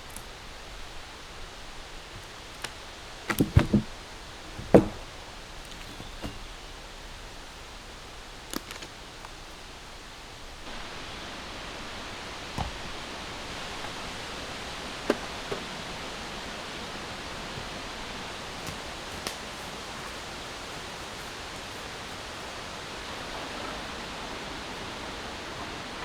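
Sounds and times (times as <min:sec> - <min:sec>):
strong wind through forest: 0:00.0 - 0:26.0
sharp knocks: 0:03.3 - 0:04.0, 0:04.6 - 0:06.5.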